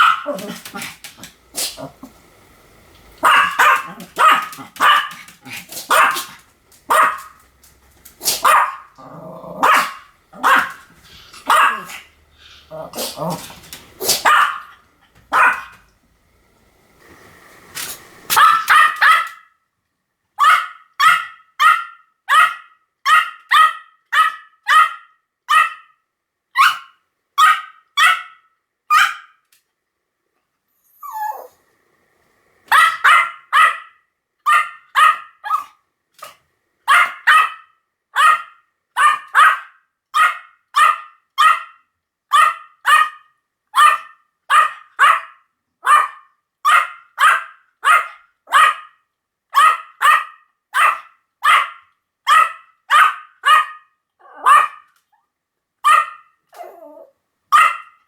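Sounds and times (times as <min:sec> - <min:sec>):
small dog barking high yaps: 0:00.0 - 0:00.9, 0:03.2 - 0:05.3, 0:05.9 - 0:07.4, 0:08.3 - 0:08.9, 0:09.6 - 0:10.8, 0:11.4 - 0:12.1, 0:14.0 - 0:15.8, 0:18.3 - 0:19.6, 0:20.4 - 0:26.0, 0:26.6 - 0:29.4, 0:32.7 - 0:35.8, 0:36.9 - 0:54.9, 0:55.8 - 0:56.7, 0:57.5 - 0:58.0.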